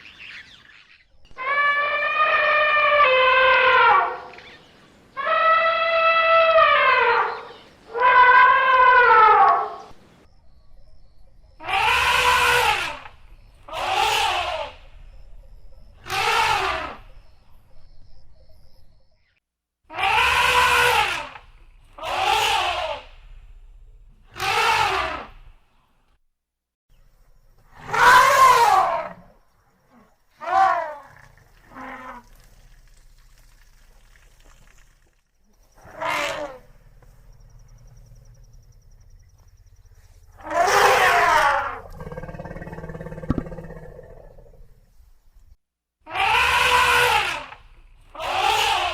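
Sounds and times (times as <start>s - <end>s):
elephant trumpeting: 1.4s - 4.4s, 5.2s - 9.8s, 11.6s - 13.1s, 13.7s - 14.8s, 16.0s - 17.0s, 19.9s - 21.4s, 22.0s - 23.3s, 24.3s - 25.5s, 27.8s - 29.2s, 35.8s - 36.6s, 40.4s - 44.4s, 46.1s - 48.9s.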